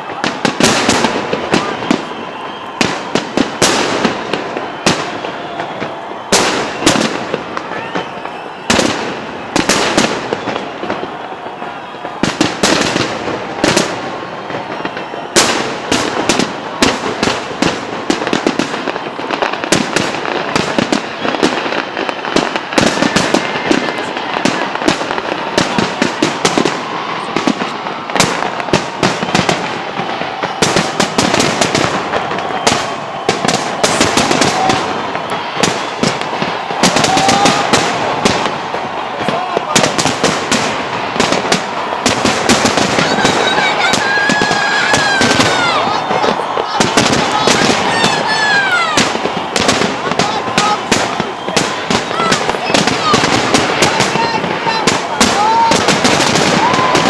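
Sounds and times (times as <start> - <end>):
fireworks bangs and crackling: 0.0 - 57.0.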